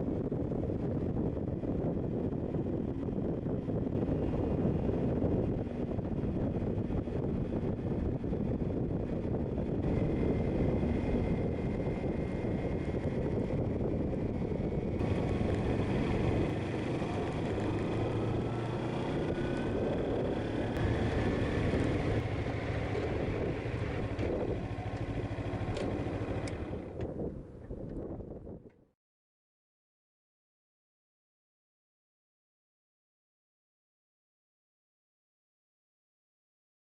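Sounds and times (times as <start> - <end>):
motorcycle engine drone: 0.0 - 28.8
wind and road rush: 0.0 - 28.9.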